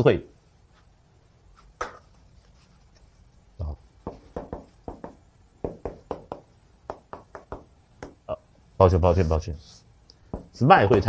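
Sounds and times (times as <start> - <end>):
chalk tapping on blackboard: 4.0 - 8.3, 10.2 - 10.6.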